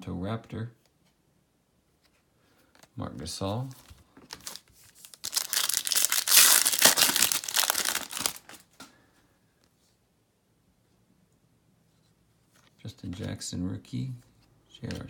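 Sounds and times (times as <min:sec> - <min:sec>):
plastic wrapper crinkling: 0:03.8 - 0:08.8.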